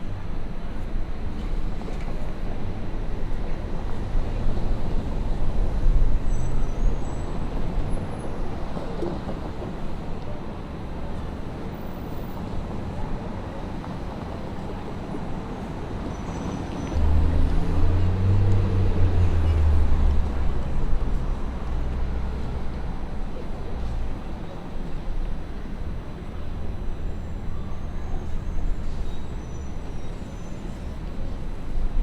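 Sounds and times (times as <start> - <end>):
street traffic noise: 0.0 - 32.0
vehicle engine rumble: 0.0 - 32.0.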